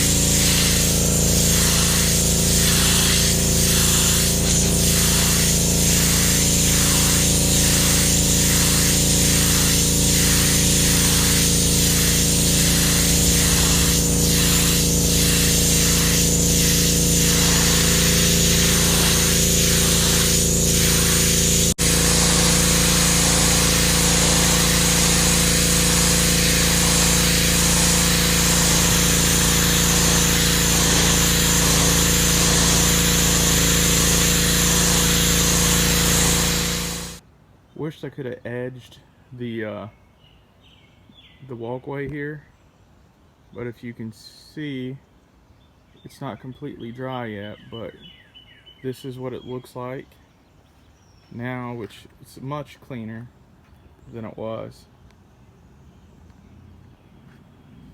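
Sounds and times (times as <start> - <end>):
high-pressure water spray on concrete: 0.0 - 37.2
pressure washer engine drone: 0.0 - 37.2.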